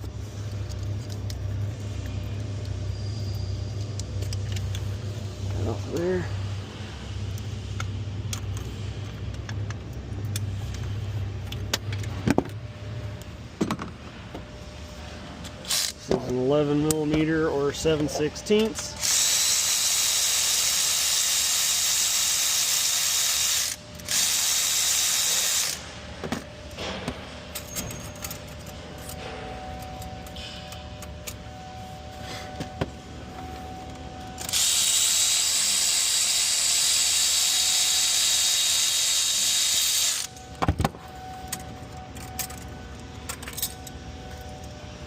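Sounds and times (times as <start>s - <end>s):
cordless power tool running: 34.5s - 40.4s.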